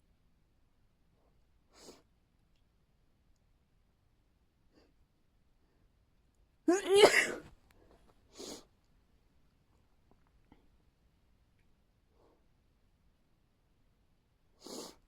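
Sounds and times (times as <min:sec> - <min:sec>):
person sneezing: 0:06.7 - 0:07.5.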